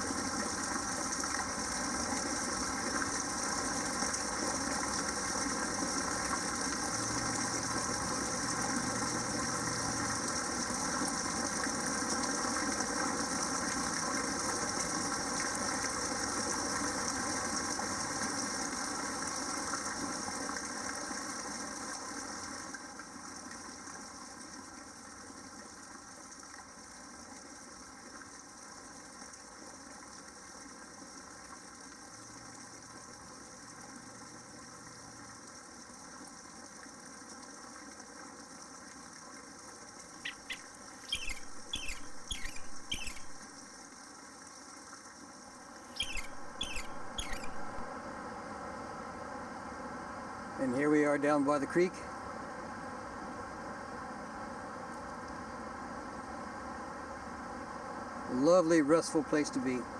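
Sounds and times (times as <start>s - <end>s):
small bird chirping: 40.2s - 43.4s, 45.9s - 47.9s.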